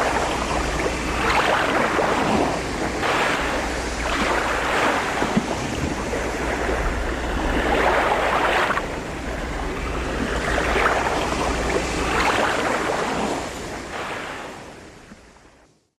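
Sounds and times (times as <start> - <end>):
wind blowing: 0.0 - 15.0
ocean waves breaking: 0.0 - 15.7.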